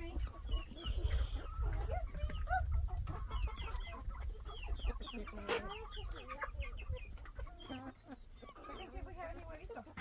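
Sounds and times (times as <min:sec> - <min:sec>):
chickens clucking: 0:00.0 - 0:10.0.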